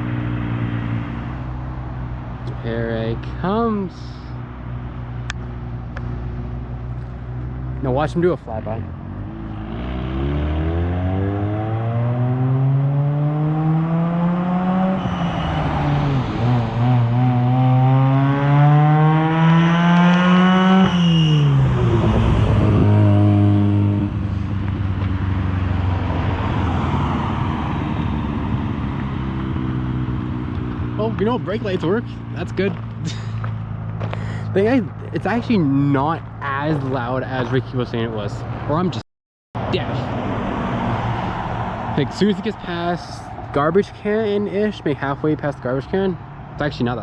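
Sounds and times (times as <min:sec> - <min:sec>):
rotary engine car accelerating past: 0:08.9 - 0:31.0.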